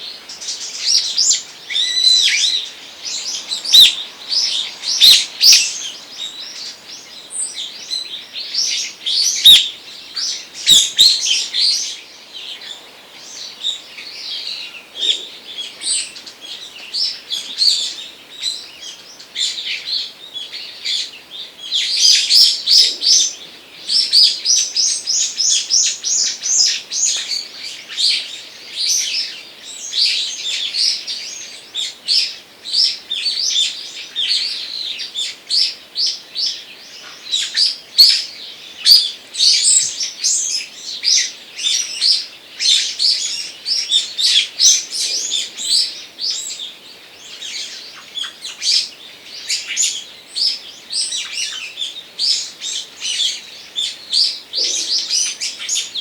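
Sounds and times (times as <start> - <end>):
songbirds chirping: 0.0 - 56.0.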